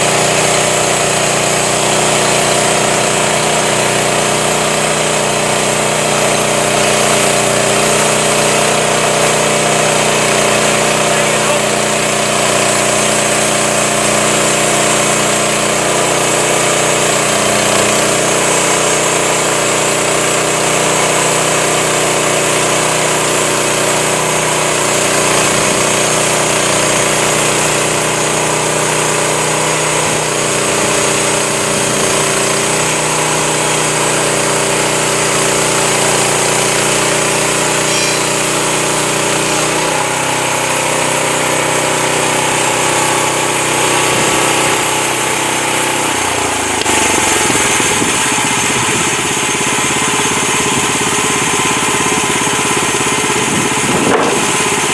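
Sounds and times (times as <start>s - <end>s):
sawmill engine running: 0.0s - 54.9s.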